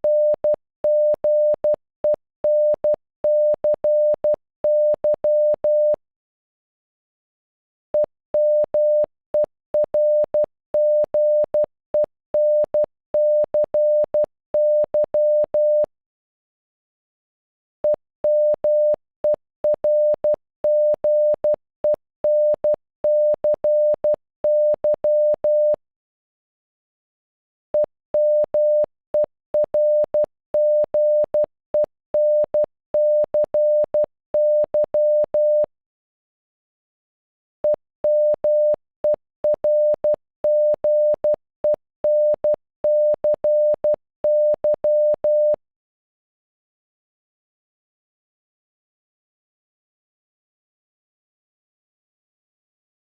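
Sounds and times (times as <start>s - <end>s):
morse code beeps: 0.0s - 1.8s, 2.4s - 6.0s, 8.0s - 15.9s, 18.3s - 19.0s, 19.7s - 25.8s, 27.8s - 35.7s, 37.6s - 45.6s
morse code beeping tone: 27.8s - 35.7s, 37.6s - 45.6s.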